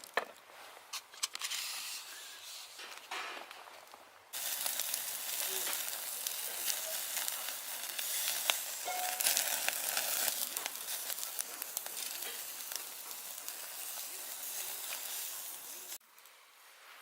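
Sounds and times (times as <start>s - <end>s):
food sizzling in a pan: 4.3s - 16.0s.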